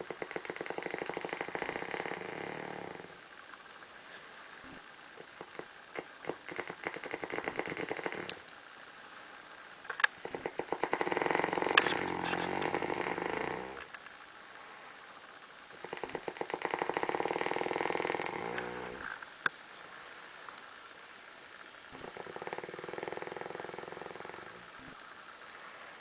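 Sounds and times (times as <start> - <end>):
man snoring: 0.3 - 3.2, 6.5 - 8.4, 10.4 - 13.9, 15.8 - 19.2, 22.0 - 25.0.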